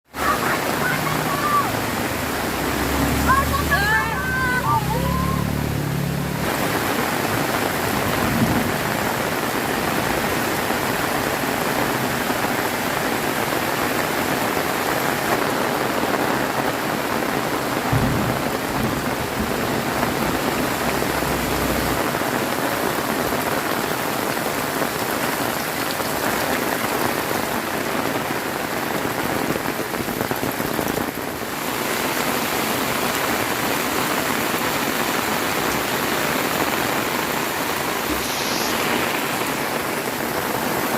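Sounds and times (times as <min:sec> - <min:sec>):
heavy rain pouring: 0:00.0 - 0:40.9
low thumps: 0:17.7 - 0:22.8.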